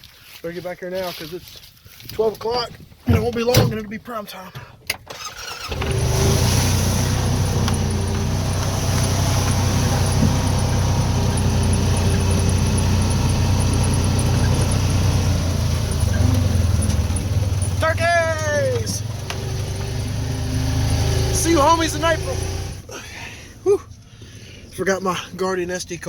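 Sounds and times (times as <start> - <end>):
road and wind noise: 5.0 - 24.8
vehicle engine droning: 5.5 - 23.0.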